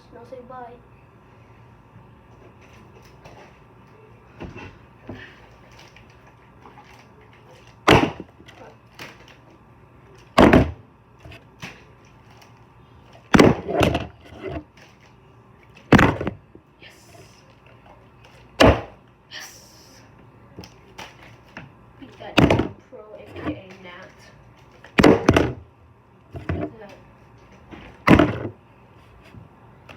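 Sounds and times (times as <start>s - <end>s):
plastic bottle landing thuds: 7.8s - 8.3s, 10.4s - 10.8s, 13.3s - 14.6s, 15.9s - 16.4s, 18.6s - 19.0s, 22.4s - 22.8s, 24.9s - 25.6s, 27.7s - 28.6s.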